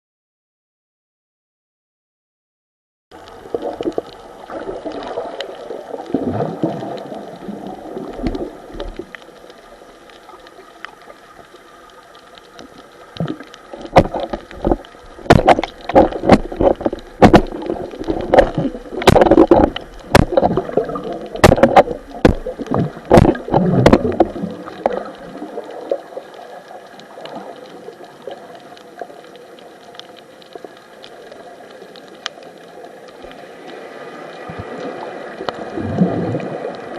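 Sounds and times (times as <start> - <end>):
underwater gurgling bubbles: 3.2 - 36.9
underwater clicks and knocks: 6.1 - 9.3, 12.2 - 26.0.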